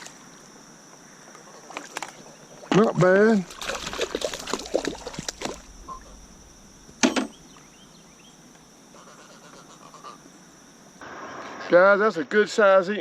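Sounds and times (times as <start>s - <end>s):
high-pitched insect drone: 0.0s - 13.0s
sharp knock: 7.0s - 7.4s.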